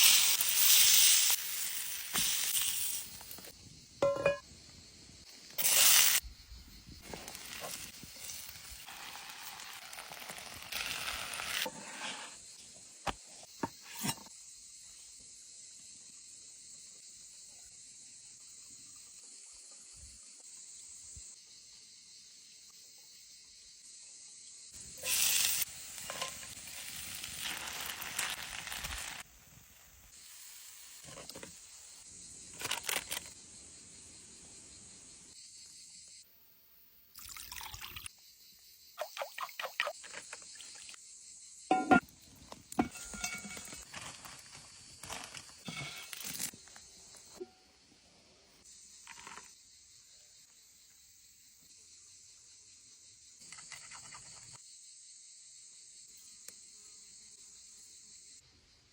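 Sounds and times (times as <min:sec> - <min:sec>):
meat sizzling: 0:00.0 - 0:04.4, 0:05.6 - 0:06.2, 0:07.0 - 0:11.7, 0:24.8 - 0:31.1.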